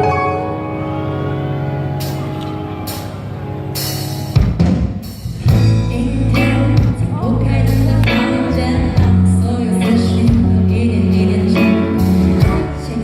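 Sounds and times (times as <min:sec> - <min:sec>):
instrumental backing with beat: 0:00.0 - 0:13.0
woman singing pop song: 0:05.5 - 0:13.0.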